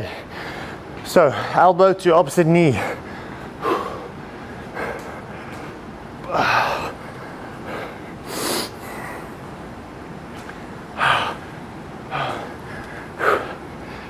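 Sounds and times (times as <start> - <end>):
man breathing hard: 0.0 - 1.6, 2.7 - 9.4, 12.1 - 14.0.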